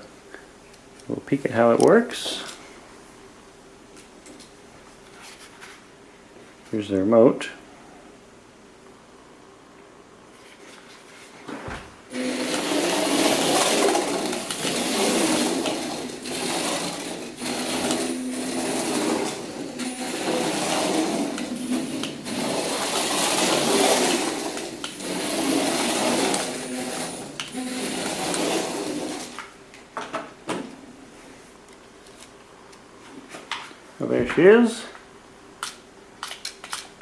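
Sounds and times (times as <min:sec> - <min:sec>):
toy car motor whirring: 0:12.2 - 0:29.4.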